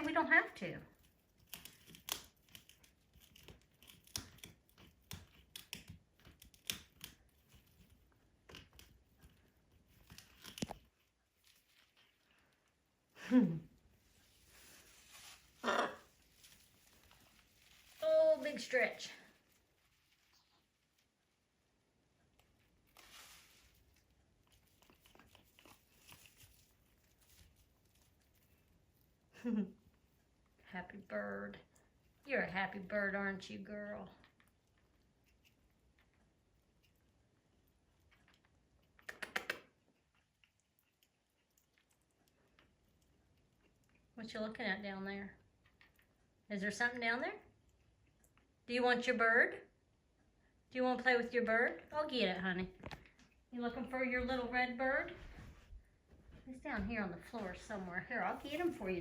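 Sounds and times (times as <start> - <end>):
parrot crackling and clicking: 0.9 - 12.0, 15.6 - 19.0, 24.0 - 29.0, 34.2 - 44.2
faint rustle: 13.9 - 21.5, 22.4 - 29.2
beak and claws scraping: 14.3 - 19.6, 57.3 - 59.0.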